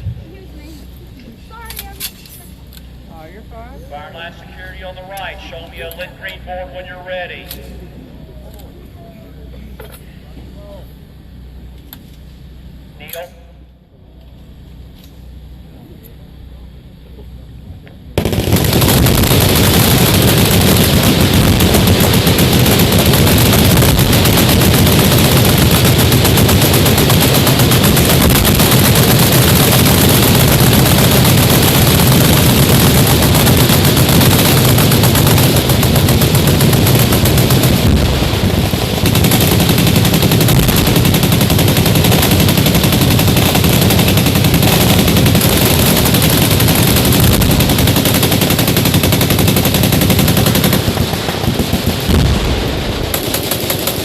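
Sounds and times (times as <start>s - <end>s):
machine guns firing: 18.2s - 54.0s.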